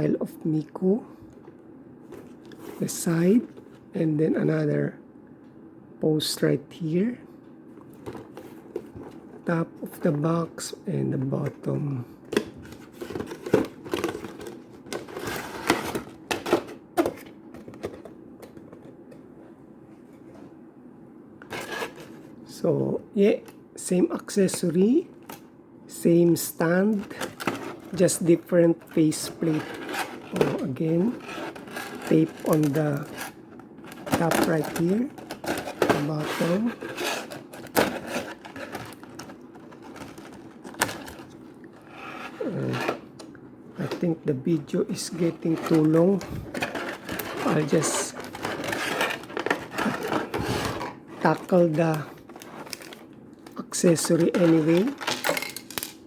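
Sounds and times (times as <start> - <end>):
plastic packaging crinkling: 29.1 - 41.5, 44.9 - 56.0.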